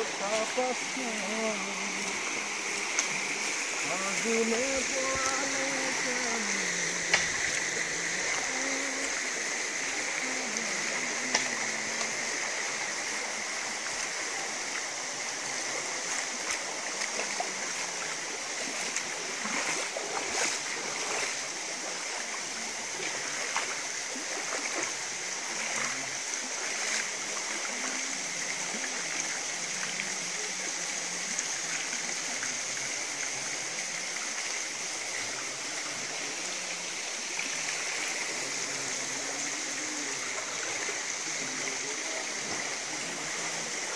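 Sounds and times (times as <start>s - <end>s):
insect chorus buzzing: 0.0s - 43.9s
water trickling: 0.0s - 43.9s.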